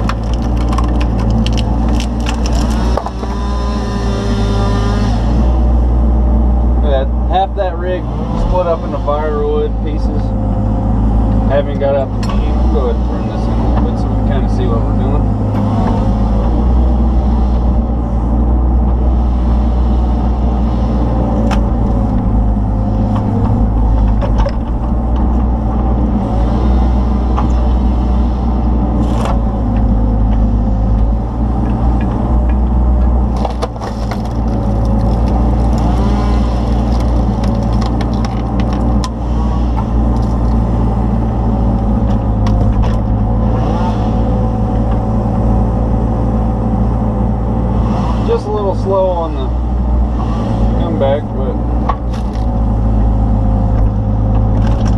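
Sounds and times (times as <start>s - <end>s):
sharp cracks of splitting wood: 0.0s - 3.4s, 33.3s - 39.2s
wood splitter crushing logs: 0.0s - 6.0s, 21.2s - 28.0s, 28.7s - 43.6s, 51.6s - 54.9s
diesel engine running with whine: 0.0s - 54.9s.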